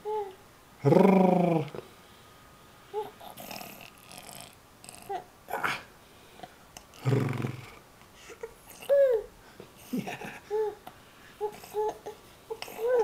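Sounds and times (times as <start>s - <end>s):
low buzzing grunt: 0.8s - 1.9s, 3.2s - 5.9s, 6.9s - 7.8s.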